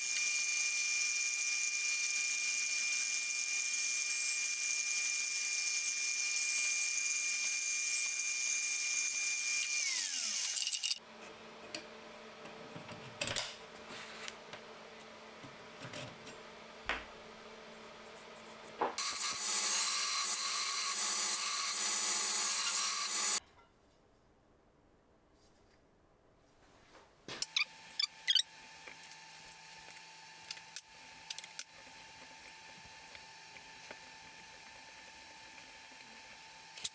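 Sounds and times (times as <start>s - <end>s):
electric grinder on metal: 0.0s - 11.0s, 19.0s - 23.4s.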